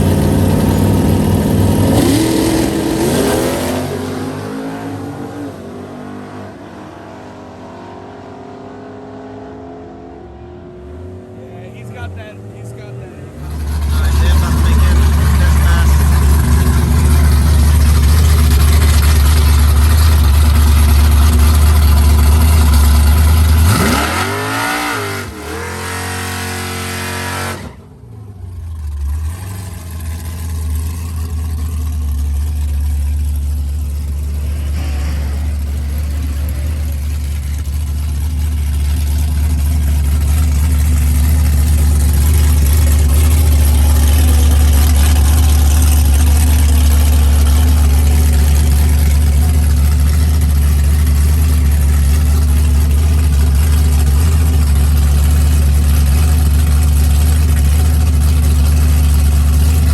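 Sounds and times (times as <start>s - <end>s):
low engine rumble: 0.0s - 4.7s, 10.3s - 26.6s, 27.5s - 59.9s
racing cars accelerating hard: 1.7s - 19.0s, 23.5s - 27.8s.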